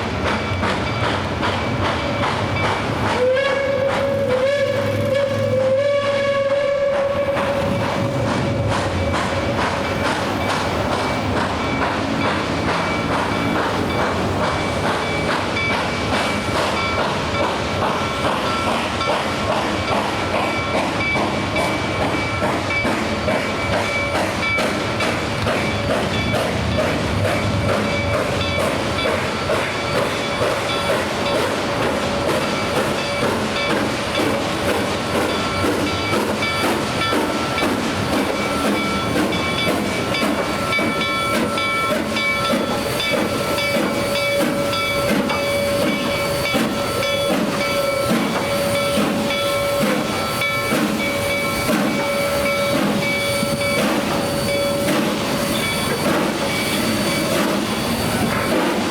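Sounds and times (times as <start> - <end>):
train rumble and hiss: 0.0 - 58.9
high ringing tones: 38.4 - 58.2.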